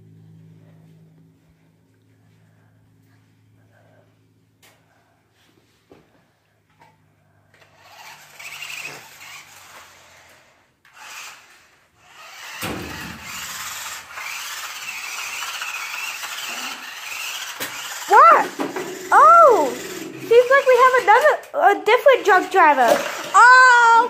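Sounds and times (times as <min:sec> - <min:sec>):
toy car motor whirring: 0:07.5 - 0:24.0.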